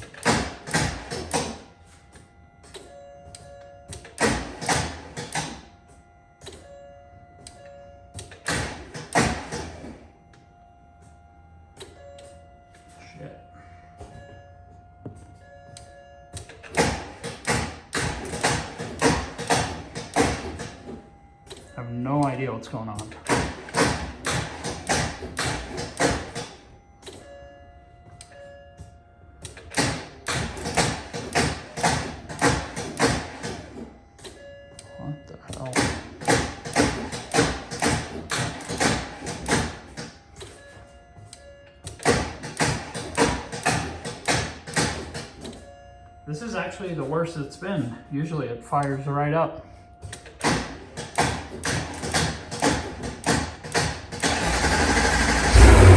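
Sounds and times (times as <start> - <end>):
car starter cranking: 22.9 - 27.3, 50.3 - 55.9.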